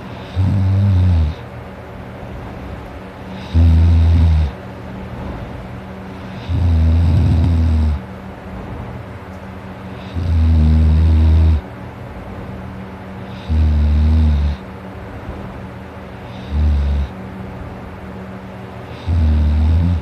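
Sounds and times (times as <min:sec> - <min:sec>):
steady low hum: 0:00.0 - 0:20.0
person snoring: 0:00.3 - 0:01.4, 0:03.4 - 0:04.6, 0:06.3 - 0:08.0, 0:13.3 - 0:14.6, 0:16.3 - 0:17.1, 0:19.0 - 0:20.0.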